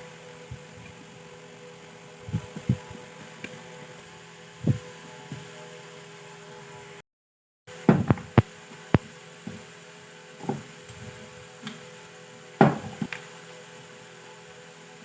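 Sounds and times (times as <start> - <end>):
steady hum: 0.0 - 7.0, 7.7 - 15.0
knocks and clicks of parts: 12.6 - 13.2.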